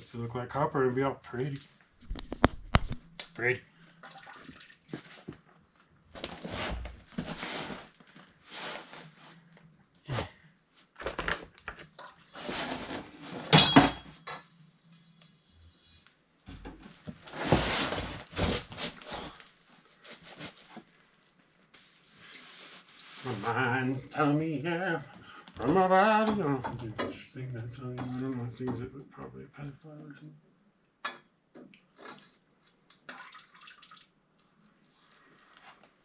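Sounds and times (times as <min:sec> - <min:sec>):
scraping and rustling: 0:06.2 - 0:09.6, 0:12.3 - 0:13.6, 0:16.8 - 0:23.7.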